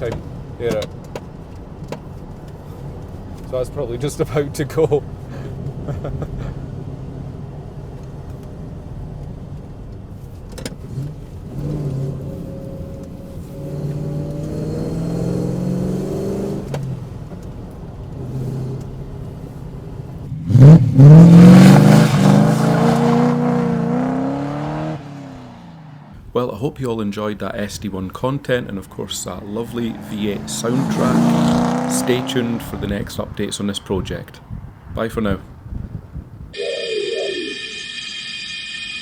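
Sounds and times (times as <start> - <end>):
car engine revving: 10.7 - 26.2, 29.1 - 33.0.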